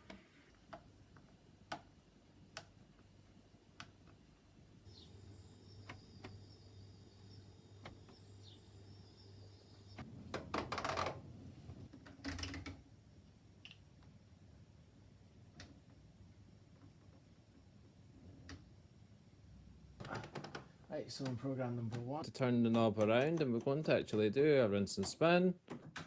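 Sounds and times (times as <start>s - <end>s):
washing machine hum and whine: 4.9s - 11.9s.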